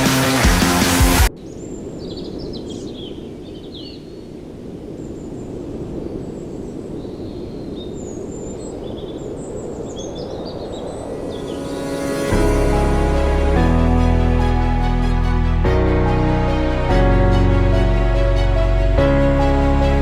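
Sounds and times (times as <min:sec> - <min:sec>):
background music: 0:00.0 - 0:01.3, 0:11.1 - 0:20.0
songbirds chirping: 0:01.3 - 0:12.4.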